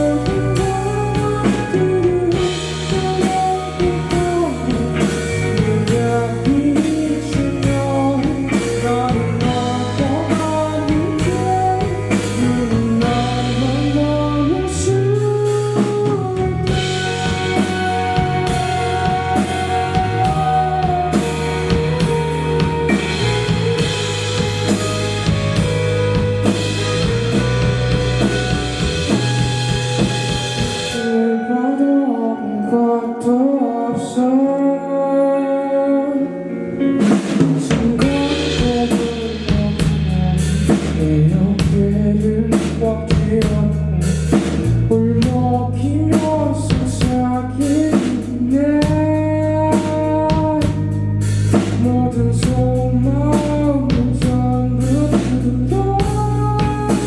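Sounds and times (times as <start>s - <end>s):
rock band playing: 0.0s - 34.2s, 36.2s - 57.0s
held guitar passage: 15.8s - 31.6s.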